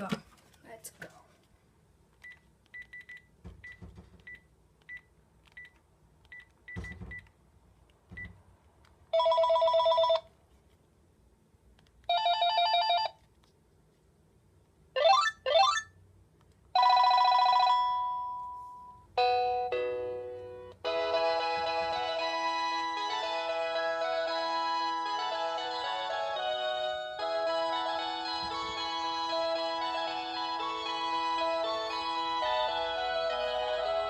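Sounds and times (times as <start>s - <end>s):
phone key beeps: 2.2s - 7.3s
electronic phone ringtones: 9.2s - 10.3s, 12.1s - 13.2s, 16.8s - 20.1s.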